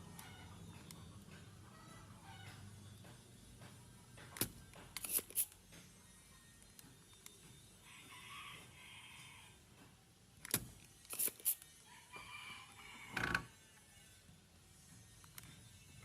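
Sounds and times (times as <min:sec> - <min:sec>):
rooster crowing: 0:07.8 - 0:09.6, 0:11.8 - 0:13.6.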